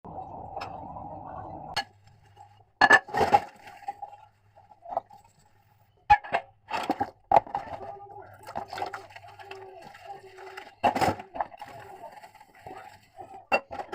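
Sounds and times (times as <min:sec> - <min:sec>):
glassware and dishes clinking: 0:02.8 - 0:04.1, 0:10.5 - 0:13.9.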